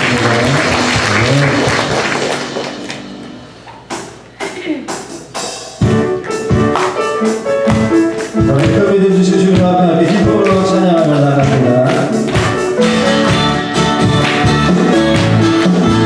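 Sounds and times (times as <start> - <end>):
band playing sustained chords: 0.0 - 3.7, 12.3 - 16.0
percussive strikes: 0.0 - 16.0.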